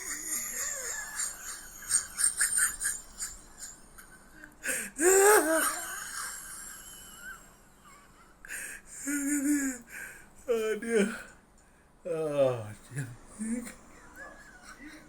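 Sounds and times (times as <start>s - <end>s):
person wheezing gasps: 4.6s - 5.8s.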